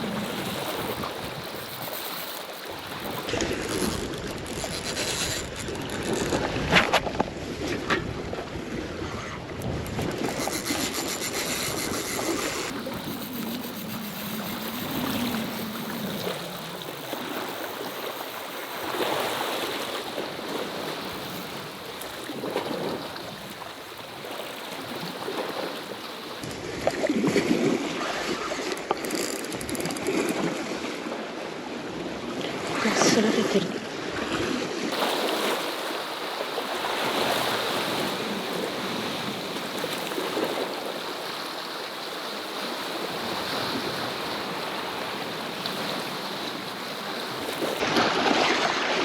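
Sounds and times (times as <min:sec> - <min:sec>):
wind noise on microphone: 0:00.0 - 0:19.2
sea waves against rocks: 0:00.0 - 0:49.0.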